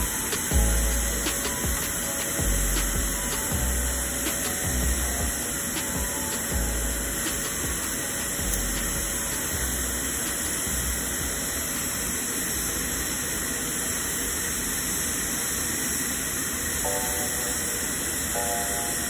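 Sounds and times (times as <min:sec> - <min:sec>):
welding arc hissing: 0:00.0 - 0:19.0
short musical tones: 0:16.9 - 0:19.0.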